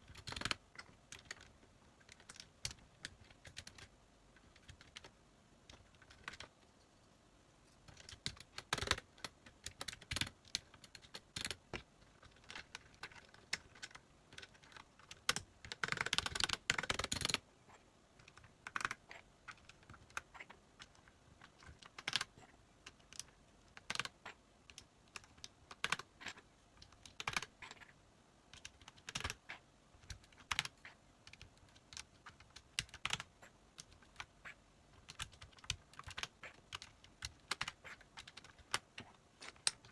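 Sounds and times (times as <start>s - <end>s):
mechanical keyboard key clicks: 28.5s - 29.4s.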